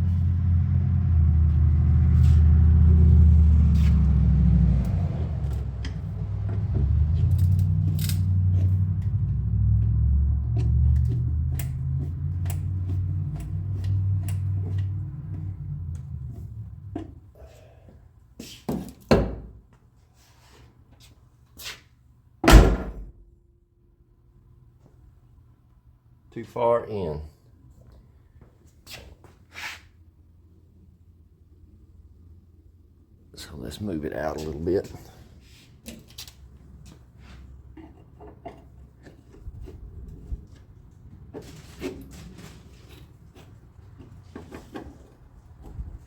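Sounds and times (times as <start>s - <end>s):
low rumbling hum: 0.0s - 17.5s
car door slamming: 22.4s - 23.2s
car door thumps: 22.4s - 23.2s.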